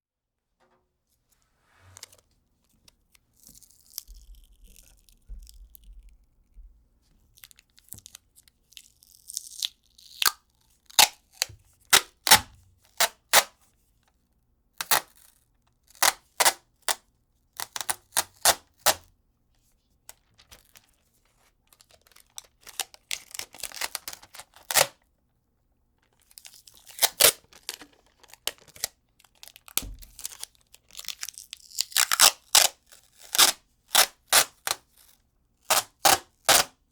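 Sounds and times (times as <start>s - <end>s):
adhesive tape ripping off roll: 3.4s - 5.8s, 11.0s - 13.6s, 17.6s - 19.1s, 22.1s - 25.0s, 26.8s - 34.8s, 35.7s - 36.8s.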